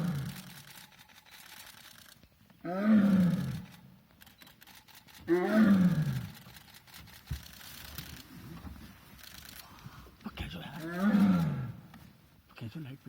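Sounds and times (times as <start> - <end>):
tiger roaring: 0.0 - 0.6, 2.6 - 3.8, 5.2 - 6.4, 10.7 - 11.9.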